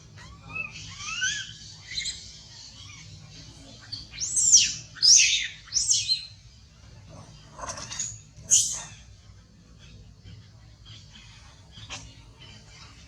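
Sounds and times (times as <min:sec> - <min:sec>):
macaques squealing: 0:00.0 - 0:03.2, 0:07.6 - 0:09.1.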